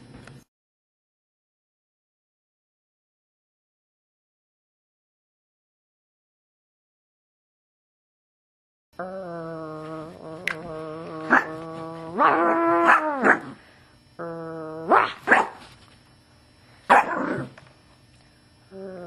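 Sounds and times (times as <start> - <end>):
dog growling: 9.0 - 13.6, 14.2 - 15.3, 16.9 - 17.6, 18.7 - 19.0
dog barking sharply: 15.2 - 15.6, 16.9 - 17.2.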